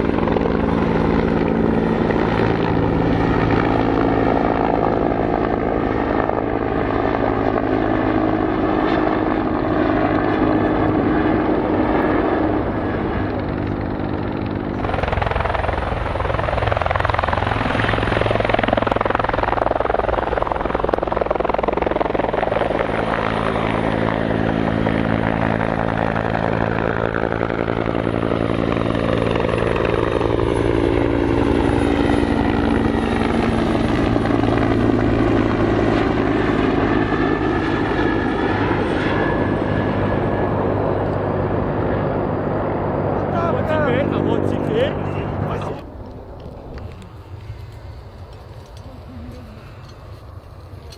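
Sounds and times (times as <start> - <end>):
helicopter rotor and turbine: 0.0 - 50.9
loud rushing noise and whine: 39.1 - 50.9.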